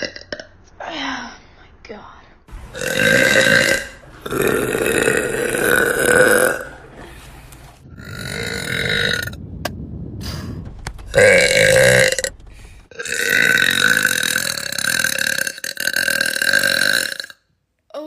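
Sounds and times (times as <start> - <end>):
woman burping: 0.0 - 0.5.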